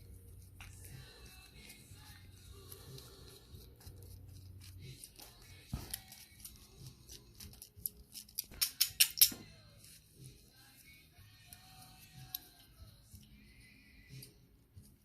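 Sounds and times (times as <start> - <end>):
small parts and tools clicking: 2.9 - 9.6, 11.4 - 13.3.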